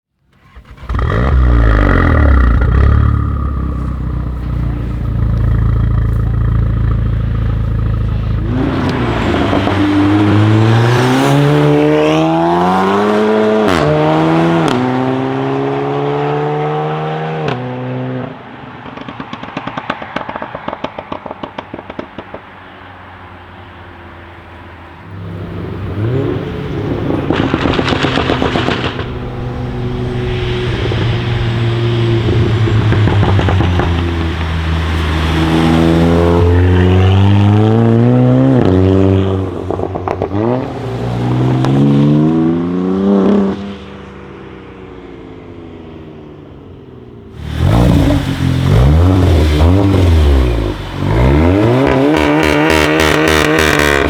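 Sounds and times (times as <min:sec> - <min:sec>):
exhaust crackles and pops: 0:00.1 - 0:11.4, 0:18.8 - 0:22.9, 0:25.1 - 0:37.4, 0:39.3 - 0:40.9, 0:47.3 - 0:54.0
car engine revving and accelerating: 0:00.5 - 0:18.4, 0:25.0 - 0:44.0, 0:47.3 - 0:54.0.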